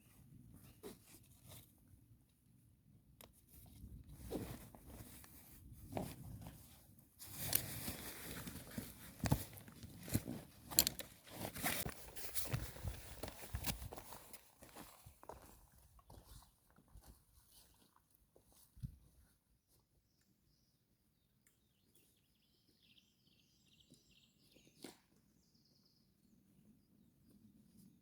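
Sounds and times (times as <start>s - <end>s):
rustling and handling: 3.3s - 14.9s.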